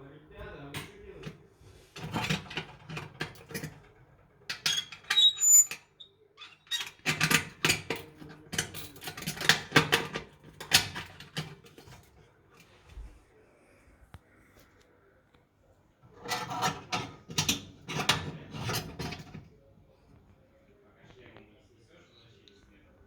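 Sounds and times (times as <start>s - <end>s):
short high squeaks: 4.8s - 6.7s.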